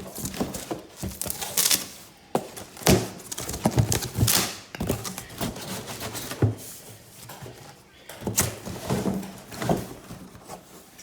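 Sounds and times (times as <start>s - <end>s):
packaging knocks and thuds: 0.0s - 6.8s
packaging scraping and rustling: 0.0s - 7.7s.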